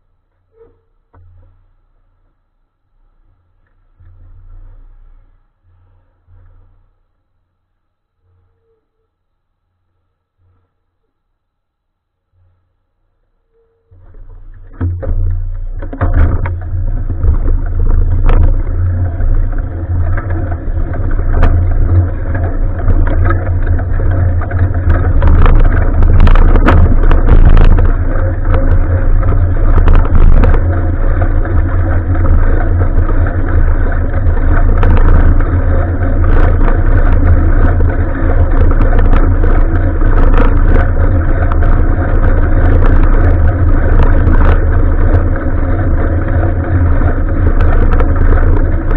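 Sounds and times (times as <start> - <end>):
bicycle clicks and knocks: 14.0 - 48.9
wind rushing over microphone: 14.0 - 48.9.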